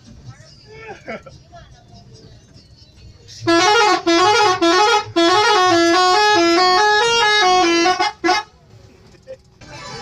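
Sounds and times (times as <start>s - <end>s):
bus musical horn playing tune: 3.4s - 8.6s.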